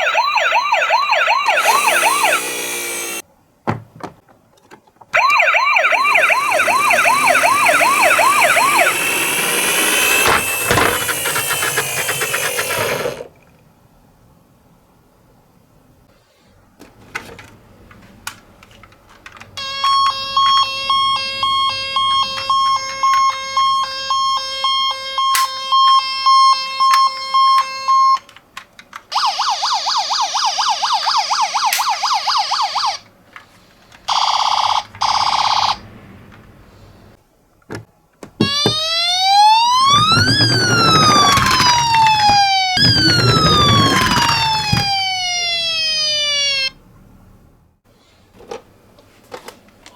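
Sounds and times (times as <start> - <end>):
toy ambulance siren: 0.0 - 3.2, 5.2 - 13.2, 19.6 - 28.3, 29.1 - 33.1, 34.1 - 35.9, 38.4 - 46.8.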